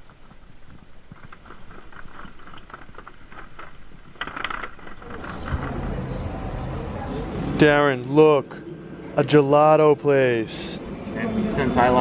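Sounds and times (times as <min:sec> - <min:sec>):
vehicle engine humming: 0:04.8 - 0:12.0.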